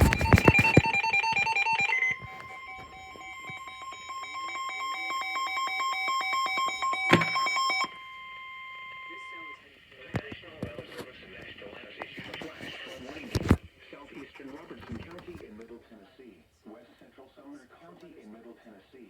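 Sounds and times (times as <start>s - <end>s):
rapidly switching electronic beeps: 0.0s - 10.4s.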